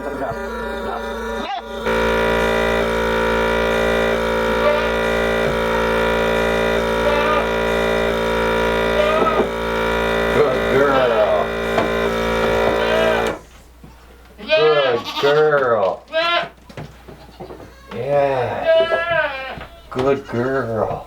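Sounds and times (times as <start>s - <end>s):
goat bleating: 0.0s - 2.6s, 3.2s - 8.0s, 12.4s - 13.4s, 14.4s - 16.6s, 17.2s - 20.0s
vacuum pump humming: 0.0s - 14.4s.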